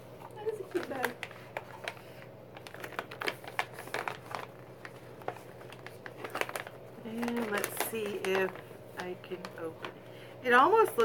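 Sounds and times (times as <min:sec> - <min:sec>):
faint steady hum: 0:00.0 - 0:11.0
plastic bag crinkling: 0:00.1 - 0:11.0.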